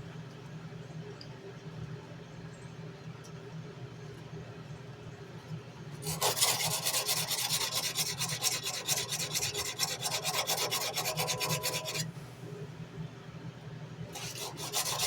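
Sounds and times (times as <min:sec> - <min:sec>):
sandpaper scraping knife blade: 0:06.0 - 0:12.1, 0:14.2 - 0:15.0.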